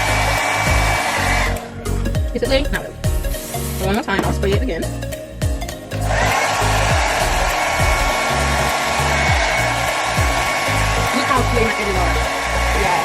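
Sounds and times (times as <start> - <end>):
hair dryer whining: 0.0 - 2.3, 5.9 - 13.0
background music with beat: 0.0 - 13.0.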